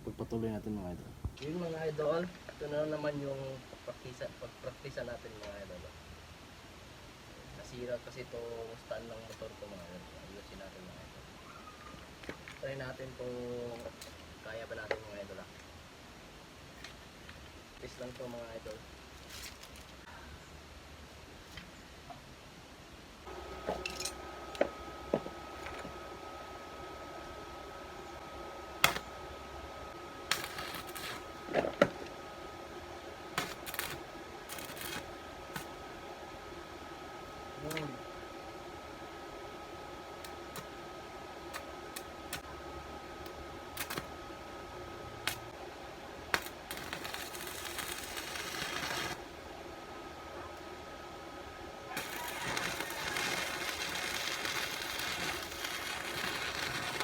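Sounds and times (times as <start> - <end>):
welding machine whine: 23.3 - 45.6, 46.3 - 49.4, 51.8 - 57.0.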